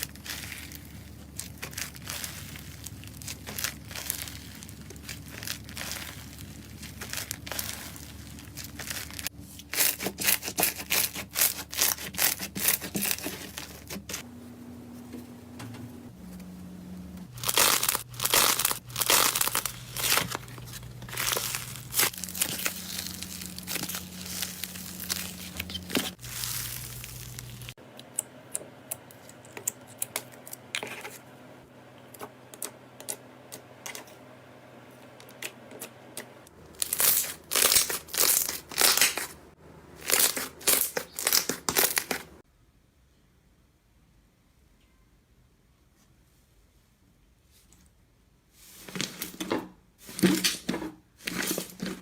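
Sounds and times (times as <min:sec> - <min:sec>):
slime crackling: 0:00.0 - 0:14.2, 0:17.3 - 0:27.8.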